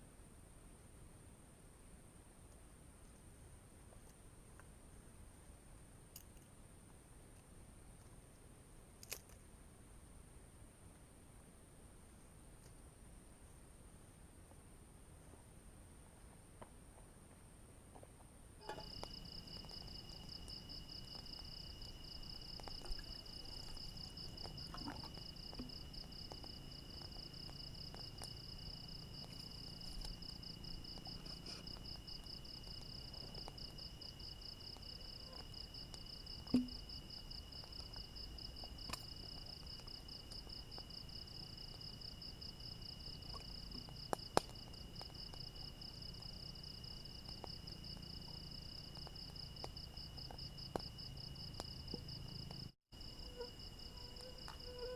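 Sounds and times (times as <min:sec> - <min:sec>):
insect steady lower tone: 0:00.0 - 0:54.9
insect high-pitched pulsing trill: 0:18.6 - 0:54.9.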